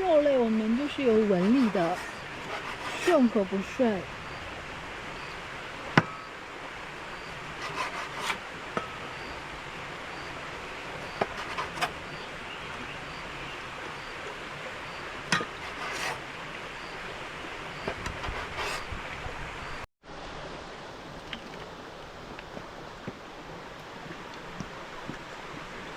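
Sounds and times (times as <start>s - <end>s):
steady background hiss: 0.0s - 18.3s.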